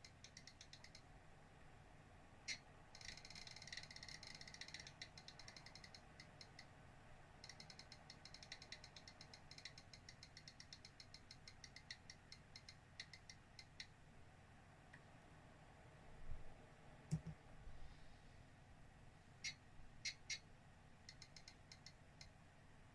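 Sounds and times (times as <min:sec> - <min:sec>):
rapid small clicks and ticks: 0:00.0 - 0:01.1, 0:02.5 - 0:06.8, 0:07.4 - 0:14.0, 0:21.0 - 0:22.4.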